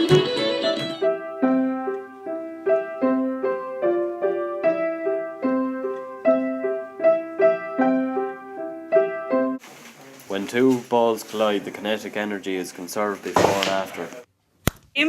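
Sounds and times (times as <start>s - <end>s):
solo piano playing: 0.0s - 9.6s.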